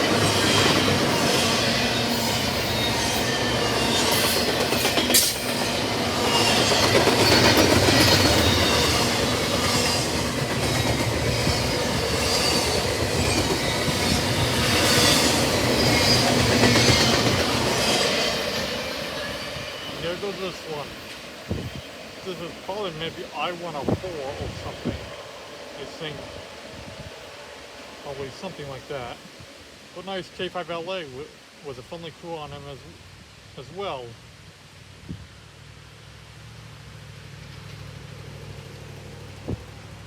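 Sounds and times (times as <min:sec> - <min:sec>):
train wheels clattering over rails: 0:00.0 - 0:26.2.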